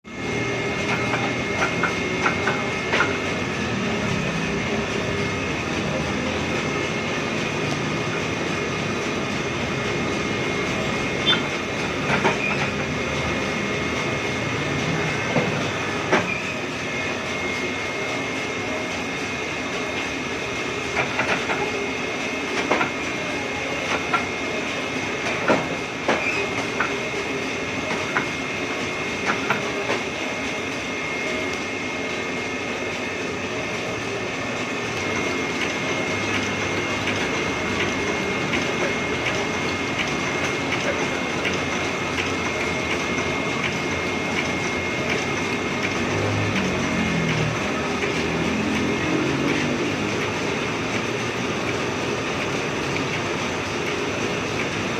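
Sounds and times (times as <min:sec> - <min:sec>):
printing press clatter: 0:00.1 - 0:54.9.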